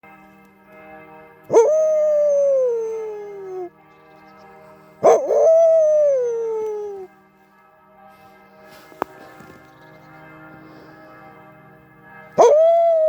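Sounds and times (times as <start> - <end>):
church bells ringing: 0.0 - 5.4, 6.4 - 13.0
dog howling: 1.5 - 3.7, 5.0 - 7.1, 12.4 - 13.0.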